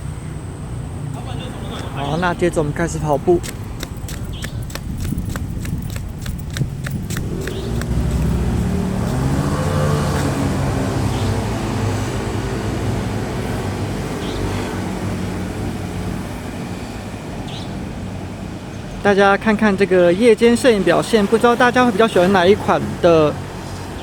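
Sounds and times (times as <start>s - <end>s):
vehicle engine running: 0.7s - 16.2s
running footsteps on pavement: 1.6s - 10.6s.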